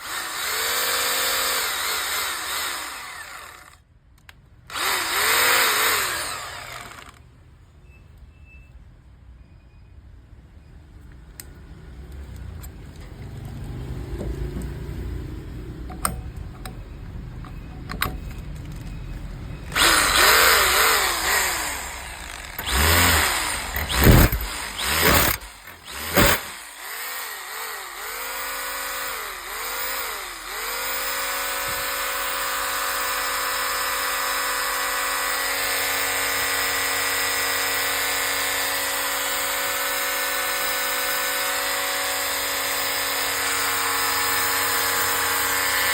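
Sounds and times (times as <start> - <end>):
electric hammer drill running: 0.0 - 3.8, 4.7 - 7.2, 19.7 - 45.9.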